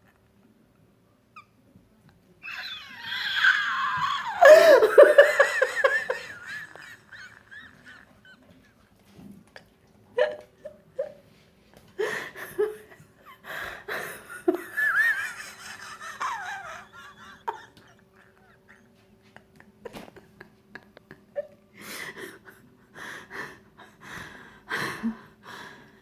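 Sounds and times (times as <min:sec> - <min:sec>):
person laughing uncontrollably: 0:02.5 - 0:08.6, 0:13.9 - 0:21.5.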